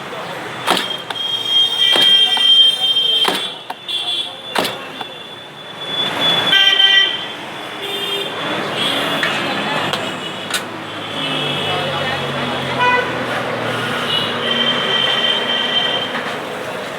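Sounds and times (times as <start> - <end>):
vehicle horns honking: 0.4 - 12.1, 12.7 - 16.5
sharp knocks: 0.6 - 3.8, 4.6 - 5.2.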